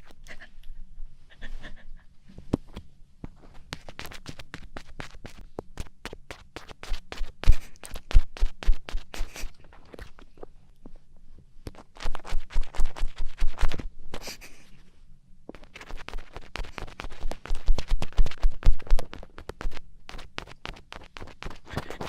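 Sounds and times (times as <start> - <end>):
scratchy clicks against microphone: 3.6 - 10.4, 15.5 - 22.0.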